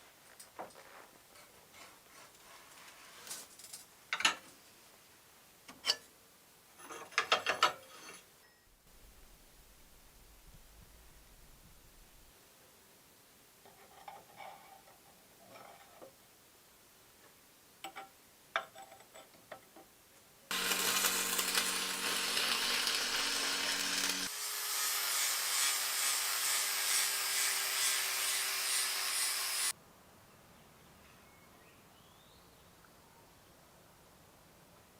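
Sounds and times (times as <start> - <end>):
power tool rasping wood: 20.5 - 29.7.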